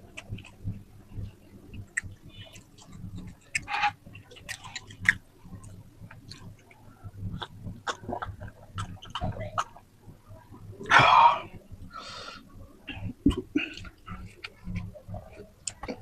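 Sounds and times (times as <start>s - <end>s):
wet open-mouthed chewing: 1.6s - 9.8s.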